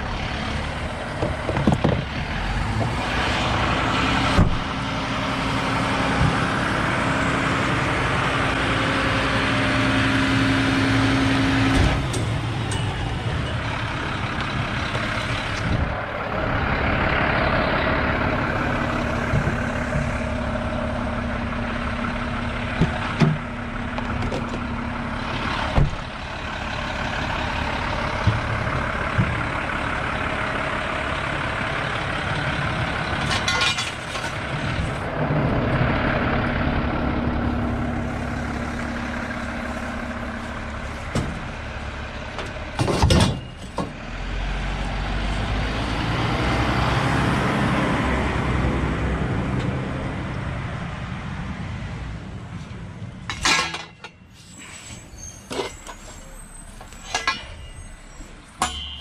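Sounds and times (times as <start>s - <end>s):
truck engine running: 0.0s - 59.0s
metallic knocks and clanks: 33.2s - 34.4s, 42.4s - 44.0s, 53.3s - 54.2s, 56.8s - 57.8s, 58.6s - 59.0s.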